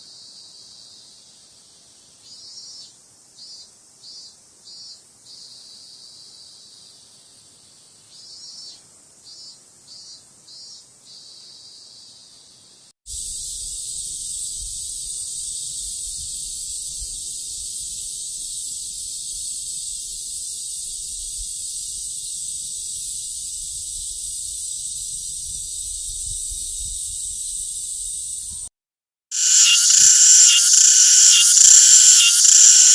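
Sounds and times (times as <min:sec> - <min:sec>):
cicadas buzzing: 0:13.1 - 0:28.7, 0:29.3 - 0:32.9.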